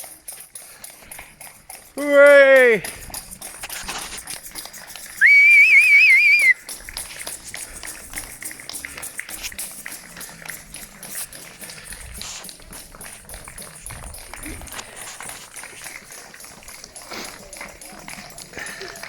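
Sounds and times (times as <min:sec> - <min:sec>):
crowd applause: 0:05.2 - 0:06.6, 0:14.3 - 0:19.0
trilling whistle blast: 0:05.2 - 0:06.6.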